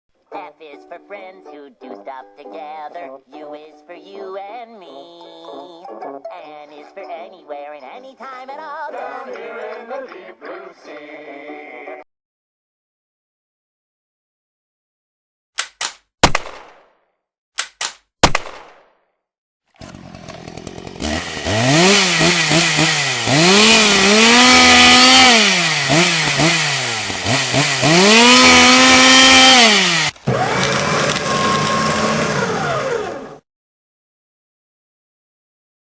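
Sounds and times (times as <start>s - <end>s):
shotgun being racked: 15.6s - 16.7s, 17.6s - 18.6s
shotgun blast: 16.2s - 16.9s, 18.2s - 18.9s
steady motor: 19.8s - 33.4s
two-stroke chainsaw revving: 19.8s - 33.4s.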